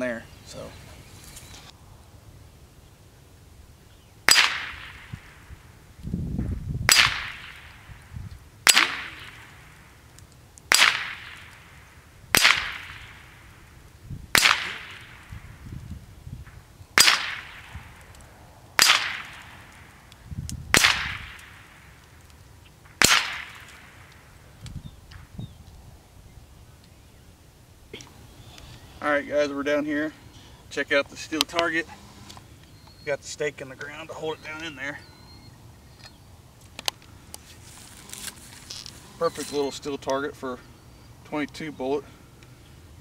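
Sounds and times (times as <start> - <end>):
rifle shots with echo: 4.3 - 5.4, 6.9 - 7.9, 8.6 - 9.8, 10.7 - 13.4, 14.3 - 15.5, 17.0 - 18.0, 18.8 - 19.9, 20.7 - 21.9, 22.9 - 24.2.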